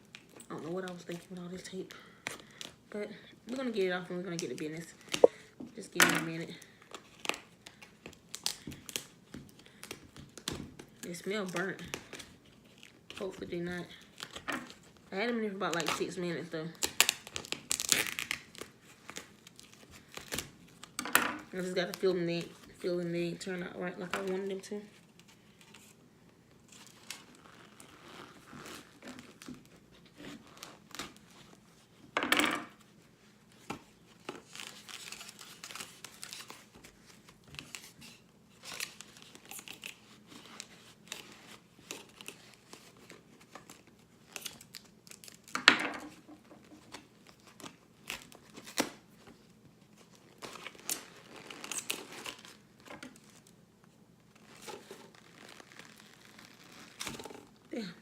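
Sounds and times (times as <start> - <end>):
packing tape tearing: 16.7 - 21.0, 34.2 - 45.6, 50.0 - 53.5, 54.4 - 57.6
loud tape rips: 16.8 - 21.0, 54.4 - 57.6
cardboard crinkling and scraping: 54.3 - 57.6.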